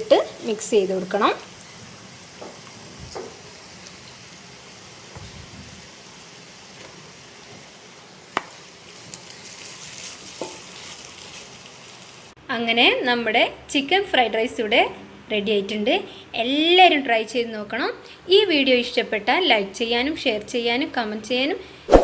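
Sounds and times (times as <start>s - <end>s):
rice sizzling in a pot: 0.0s - 12.4s.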